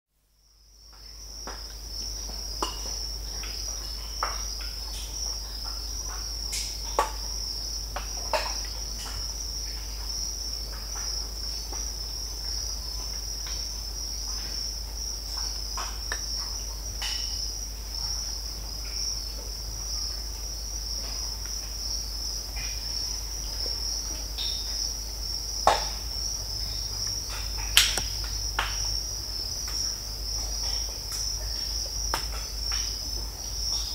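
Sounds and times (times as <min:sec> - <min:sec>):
high-pitched cricket chorus: 0:00.4 - 0:33.9
sharp snaps and pops from trees: 0:06.5 - 0:07.2, 0:15.8 - 0:17.3, 0:25.6 - 0:26.1, 0:27.0 - 0:29.0, 0:32.1 - 0:32.9.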